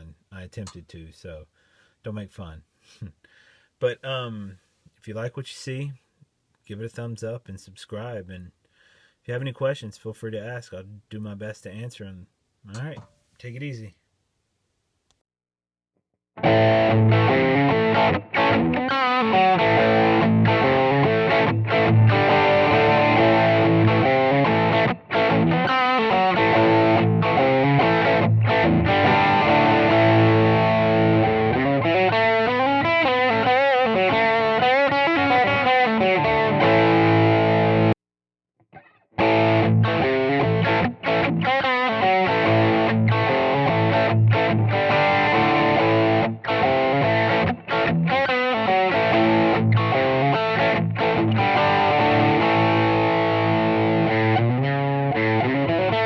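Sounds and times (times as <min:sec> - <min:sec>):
overdriven electric guitar: 0:16.4 - 0:38.0, 0:38.7 - 0:56.0.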